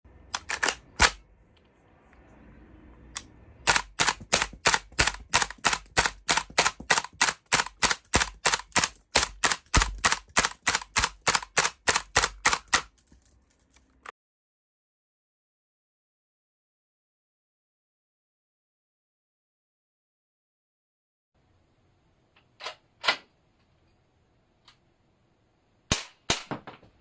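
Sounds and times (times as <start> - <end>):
toy gun cap shots: 0.4 - 1.2, 3.7 - 12.9.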